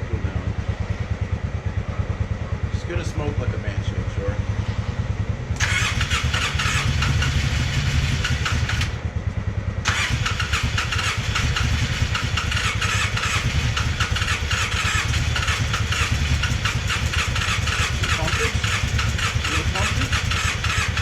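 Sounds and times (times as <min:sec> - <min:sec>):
engine clatter: 0:00.0 - 0:21.0
engine turning over unevenly: 0:05.6 - 0:21.0.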